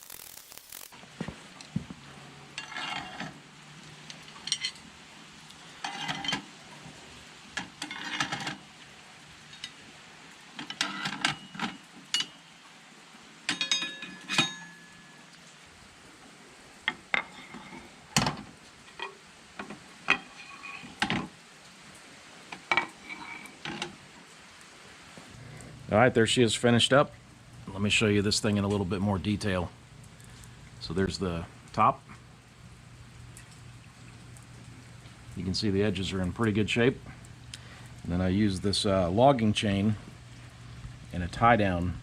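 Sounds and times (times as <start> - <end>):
metal hardware clinking and rattling: 5.8 - 6.5, 10.6 - 12.4, 13.5 - 15.2.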